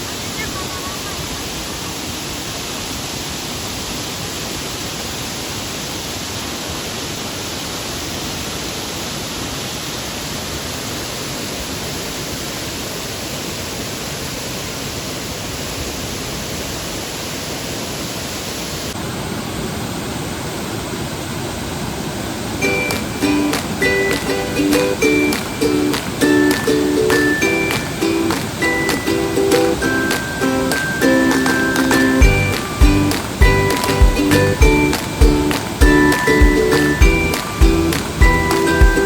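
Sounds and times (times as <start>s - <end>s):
waterfall rushing: 21.6s - 39.0s.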